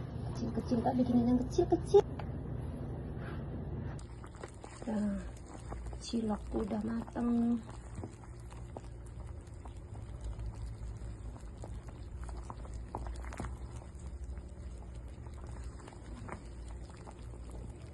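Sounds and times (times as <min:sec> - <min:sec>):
pot of water boiling: 0:00.0 - 0:02.1, 0:04.0 - 0:17.9.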